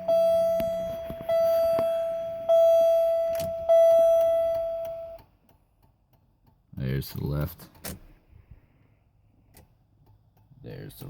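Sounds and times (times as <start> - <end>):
dashboard warning chime: 0.0 - 5.2.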